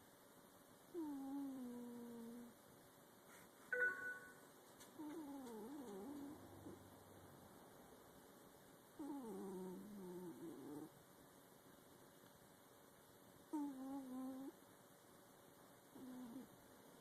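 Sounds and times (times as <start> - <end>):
pitched snores: 9.0 - 10.9.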